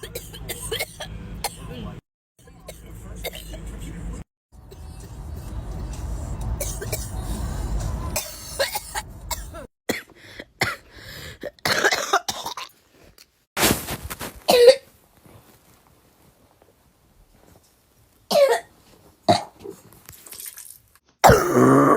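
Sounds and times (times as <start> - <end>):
people coughing: 0.0 - 1.9, 2.6 - 3.9, 4.7 - 5.5, 6.6 - 7.4, 8.2 - 12.7, 21.2 - 21.8
throat-clearing: 21.2 - 21.9.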